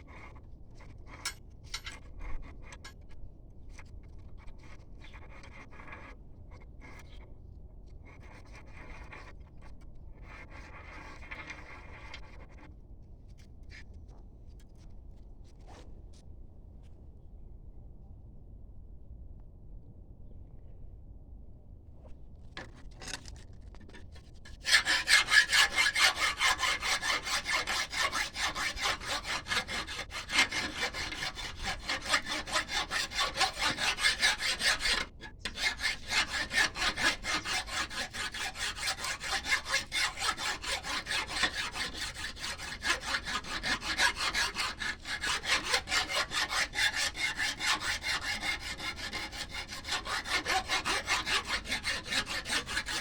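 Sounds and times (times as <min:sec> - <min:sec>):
hand tool scraping: 0:22.6 - 0:53.0.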